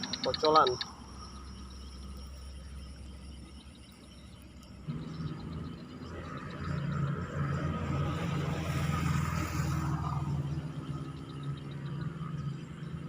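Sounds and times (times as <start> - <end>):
low engine hum: 0.0 - 13.0
vehicle passing on road: 4.8 - 13.0.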